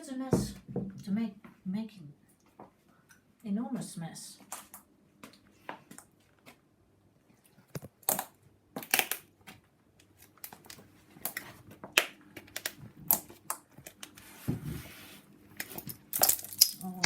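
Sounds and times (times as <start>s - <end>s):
nut shells cracking on floor: 7.8s - 9.3s, 15.6s - 17.0s.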